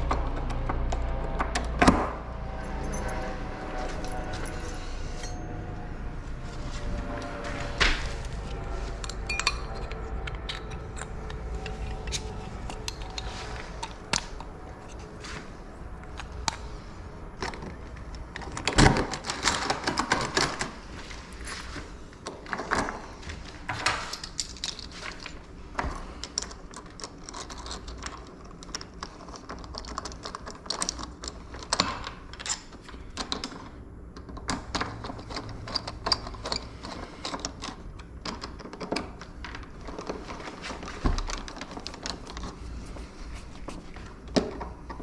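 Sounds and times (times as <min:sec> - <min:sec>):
keys and door lock rattling: 0:02.5 - 0:05.5, 0:08.4 - 0:15.1, 0:17.4 - 0:21.8, 0:23.6 - 0:42.6.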